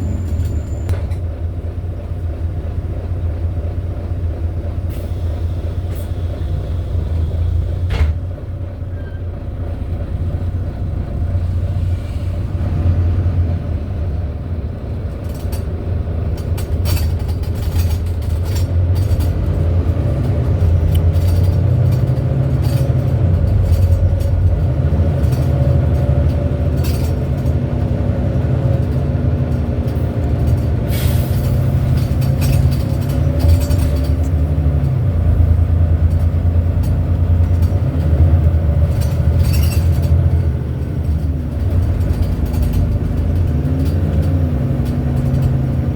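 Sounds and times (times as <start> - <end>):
bus diesel engine rumbling: 0.0 - 45.9
light rattles and clicks: 15.1 - 45.9.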